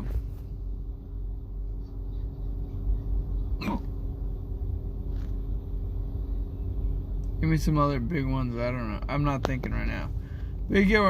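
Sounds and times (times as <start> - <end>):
steady low hum: 0.0 - 11.0
man hiccuping: 3.6 - 4.0.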